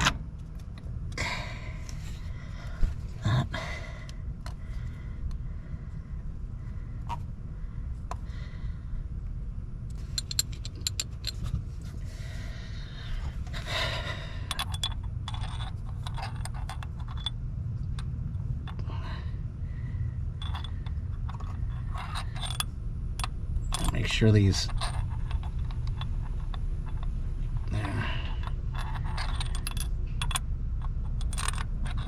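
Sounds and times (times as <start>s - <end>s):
low rumble: 0.0s - 32.0s
metallic clicks and clinks: 10.1s - 11.4s, 14.4s - 18.1s, 20.4s - 32.0s.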